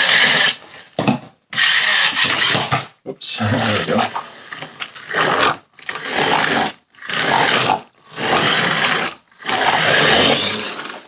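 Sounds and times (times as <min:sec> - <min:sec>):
toy truck motor whirring: 0:00.0 - 0:00.8, 0:01.5 - 0:02.7, 0:04.2 - 0:11.0.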